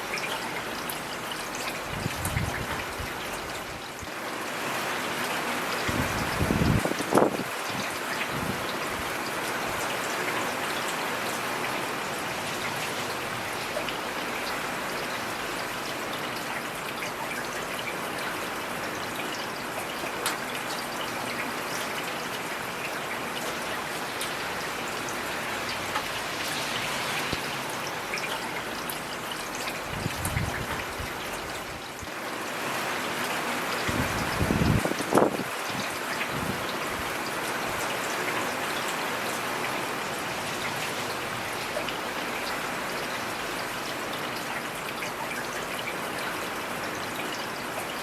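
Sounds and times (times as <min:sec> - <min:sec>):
heavy rain falling: 0:00.0 - 0:48.0.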